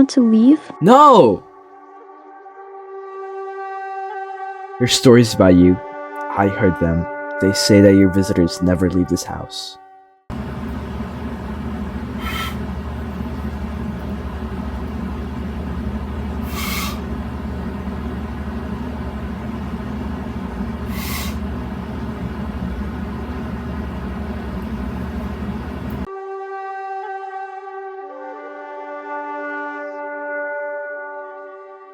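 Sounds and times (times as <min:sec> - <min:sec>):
steady low rumble: 0:10.3 - 0:26.1.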